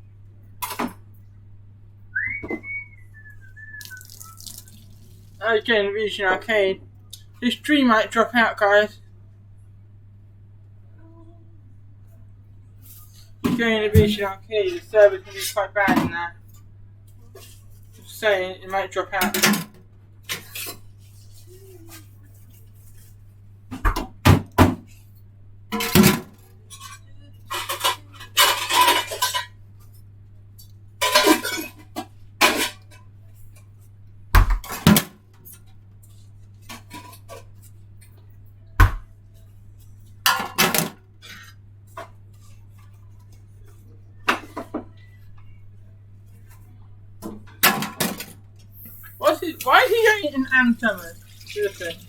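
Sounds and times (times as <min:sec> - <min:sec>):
pots and pans clattering: 0:19.2 - 0:20.9, 0:25.7 - 0:29.6, 0:31.0 - 0:33.1, 0:34.4 - 0:35.7, 0:40.3 - 0:42.5, 0:47.4 - 0:48.4.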